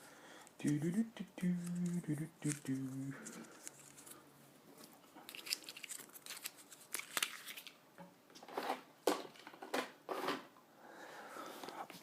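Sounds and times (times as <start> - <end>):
packaging rustling and tearing: 5.3 - 7.8.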